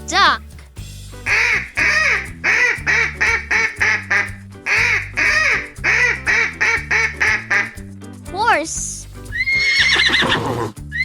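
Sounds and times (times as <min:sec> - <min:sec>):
children's song backing music: 0:00.0 - 0:11.0
duck quacking: 0:01.3 - 0:07.8.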